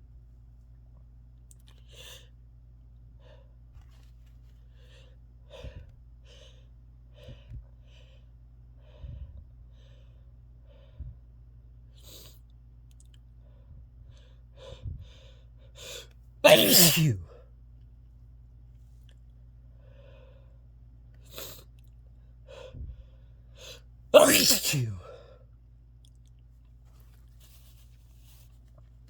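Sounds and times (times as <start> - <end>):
person breathing and sniffing: 24.2 - 25.2.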